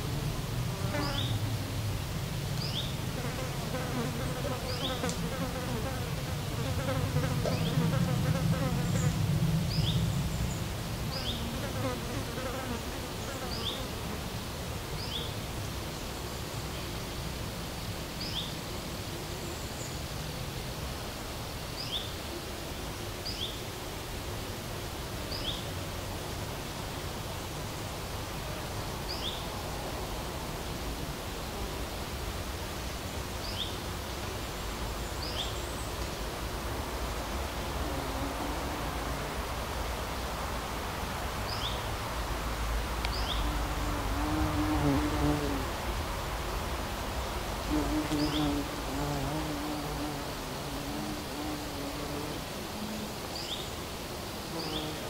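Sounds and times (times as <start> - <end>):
flying insect buzzing: 0.0 - 1.8, 2.6 - 14.5, 37.2 - 39.8, 43.1 - 46.0, 47.5 - 55.0
soft outdoor hiss: 0.0 - 55.0.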